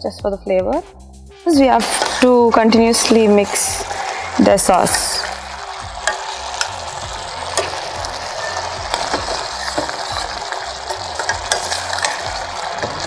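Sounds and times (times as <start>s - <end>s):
sauce sizzling in a pan: 1.5s - 13.0s
spoon clicking against pan: 3.0s - 13.0s.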